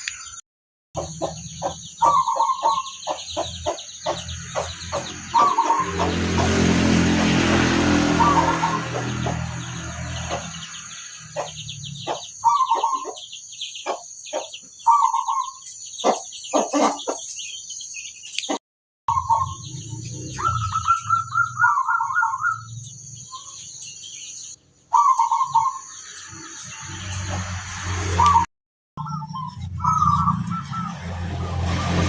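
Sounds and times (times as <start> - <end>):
dove cooing: 1.2 - 3.8, 12.1 - 13.2, 20.4 - 22.6.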